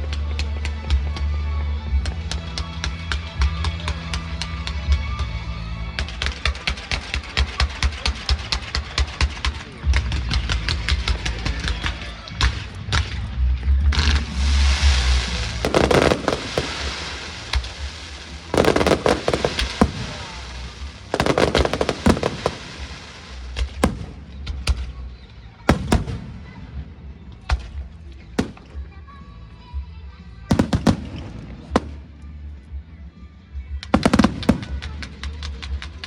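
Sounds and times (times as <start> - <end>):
background music: 0.0 - 36.0
fireworks bursting: 13.9 - 29.0, 30.5 - 32.1, 34.0 - 35.9
fireworks crackling: 13.9 - 29.0, 30.5 - 32.2, 33.9 - 36.0.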